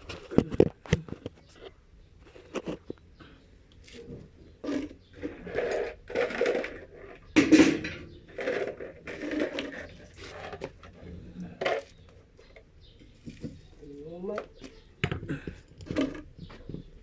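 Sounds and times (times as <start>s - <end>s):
metal objects clinking and clattering: 4.6s - 12.6s.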